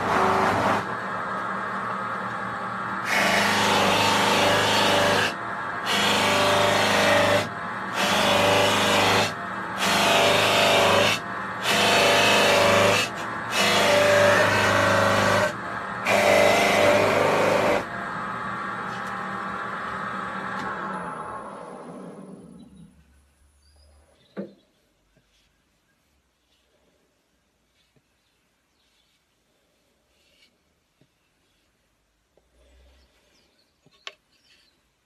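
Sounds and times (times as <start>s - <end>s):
lathe motor hum: 0.0s - 22.5s.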